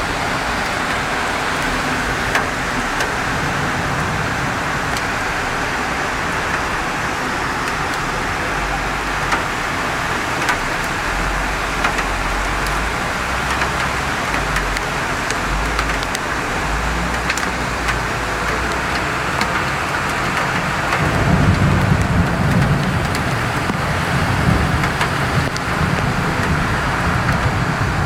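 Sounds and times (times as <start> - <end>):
low rumble: 0.0 - 6.6
heavy rain pouring: 0.0 - 28.0
sharp drip ticks: 11.7 - 23.8.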